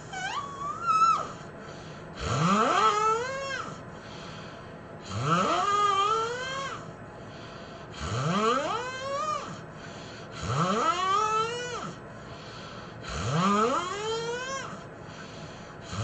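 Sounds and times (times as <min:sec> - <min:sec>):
quiet breaths: 0:01.4 - 0:02.2, 0:03.9 - 0:05.2, 0:06.9 - 0:08.3, 0:09.6 - 0:10.6, 0:12.0 - 0:13.3, 0:14.8 - 0:16.0
person snoring: 0:05.0 - 0:06.8, 0:07.9 - 0:09.0, 0:13.0 - 0:13.8.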